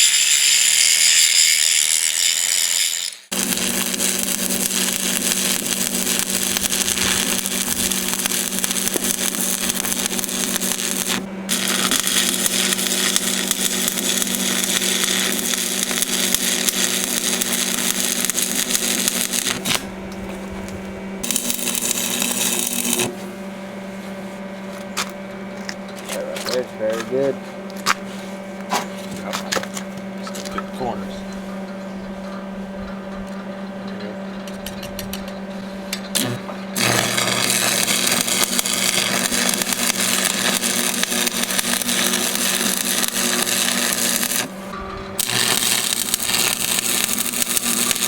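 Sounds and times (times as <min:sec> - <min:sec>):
welding arc crackling: 0:00.0 - 0:23.2, 0:36.1 - 0:48.0
electrical hum: 0:03.3 - 0:48.0.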